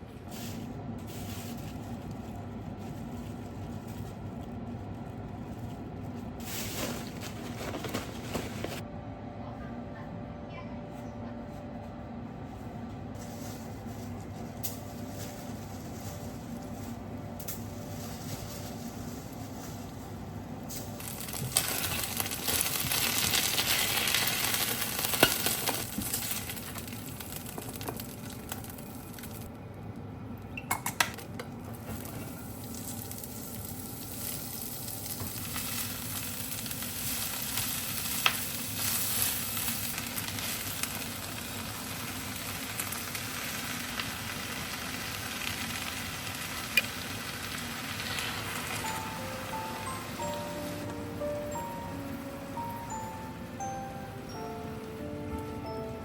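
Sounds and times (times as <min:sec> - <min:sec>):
food sizzling in a pan: 0:20.8 - 0:29.5, 0:32.3 - 0:52.0.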